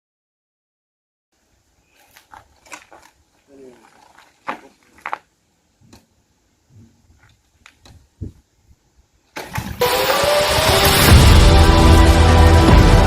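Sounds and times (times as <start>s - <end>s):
loud dense music: 9.8s - 13.0s.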